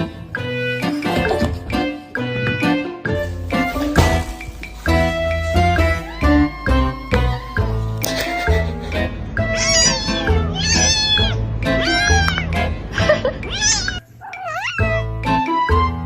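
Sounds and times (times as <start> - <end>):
background music: 0.0 - 16.0
cat meowing: 9.5 - 12.6, 13.5 - 15.2.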